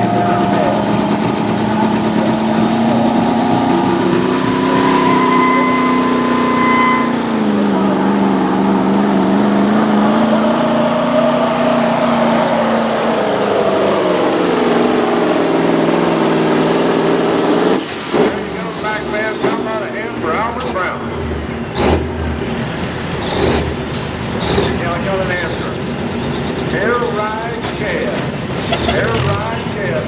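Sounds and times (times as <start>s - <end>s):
diesel truck engine under load: 0.0s - 30.0s
high whine: 0.2s - 8.0s.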